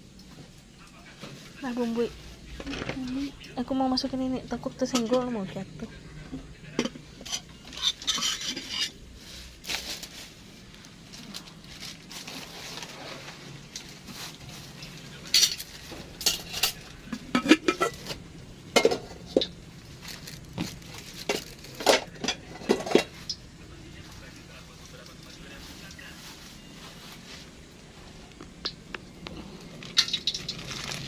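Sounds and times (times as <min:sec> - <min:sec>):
metal utensils clinking on pots: 0:04.6 - 0:05.5, 0:06.8 - 0:09.0, 0:13.7 - 0:19.6, 0:20.6 - 0:23.4, 0:29.8 - 0:31.0.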